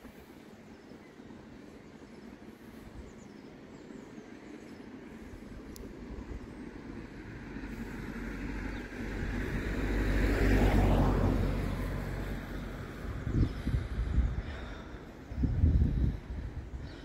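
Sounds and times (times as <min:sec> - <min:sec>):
vehicle driving past: 0:06.8 - 0:13.9.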